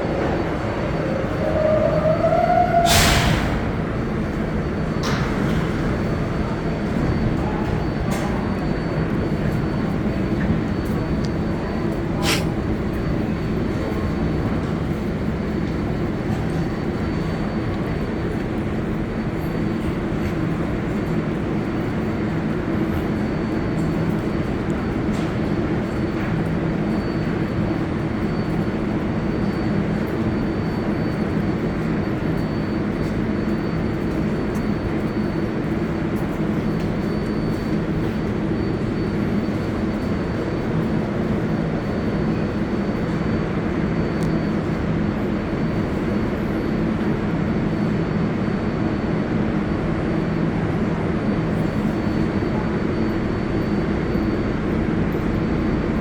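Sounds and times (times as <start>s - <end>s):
subway train rumble: 0.0s - 56.0s.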